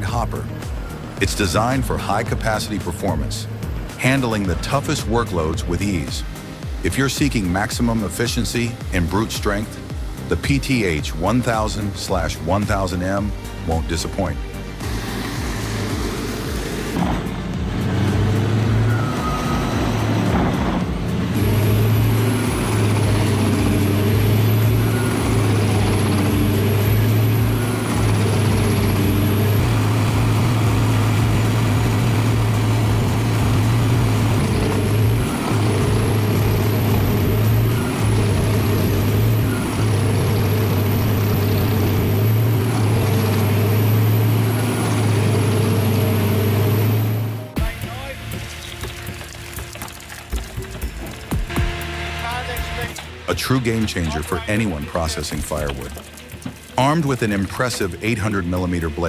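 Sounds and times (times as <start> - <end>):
diesel engine droning: 0.0 - 59.0
thin high whine: 12.9 - 49.8.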